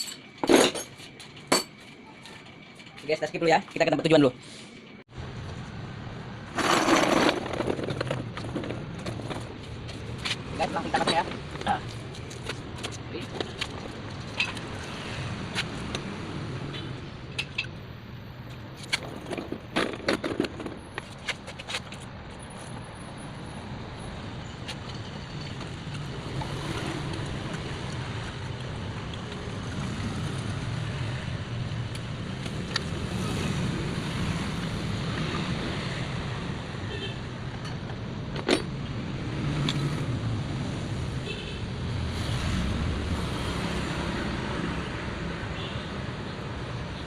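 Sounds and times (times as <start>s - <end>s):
parts clicking and knocking: 6.5s - 14.9s, 17.3s - 17.8s, 18.4s - 22.8s.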